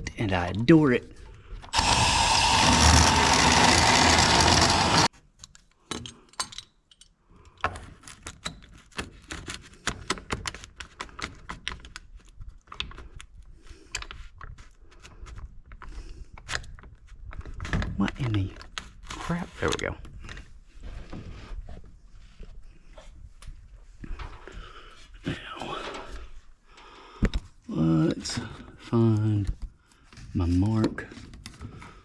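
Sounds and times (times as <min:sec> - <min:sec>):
power tool cutting pipe: 0:01.7 - 0:05.1.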